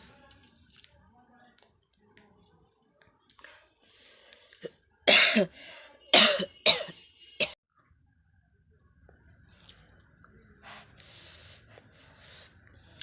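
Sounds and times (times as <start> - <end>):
person coughing: 5.1 - 5.5, 6.1 - 7.6.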